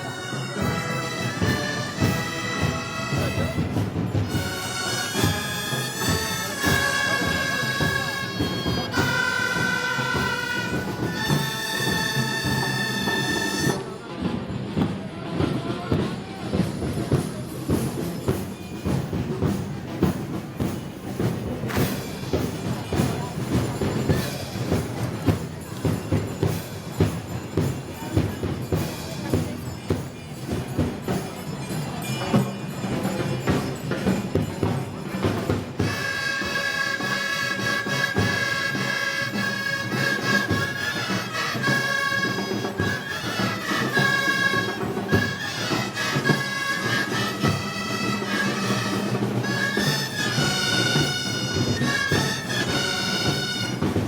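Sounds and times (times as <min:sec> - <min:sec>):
high wind instrument melody: 0:00.0 - 0:14.2, 0:30.4 - 0:54.0
drums and brass band: 0:00.0 - 0:54.0.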